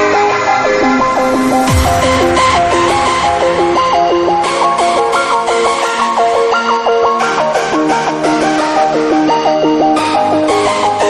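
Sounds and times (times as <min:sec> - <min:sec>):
electronic music: 0:00.0 - 0:07.7.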